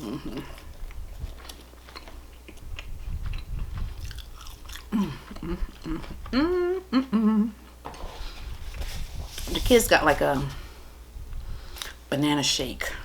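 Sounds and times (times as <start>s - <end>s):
short hummed vocal sounds: 0.0s - 1.1s, 4.8s - 7.8s
person chewing food: 0.0s - 6.7s.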